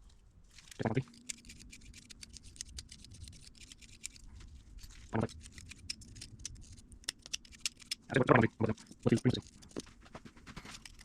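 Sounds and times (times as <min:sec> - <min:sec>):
metallic clicks of hand tools: 0:00.6 - 0:04.2, 0:05.3 - 0:08.1.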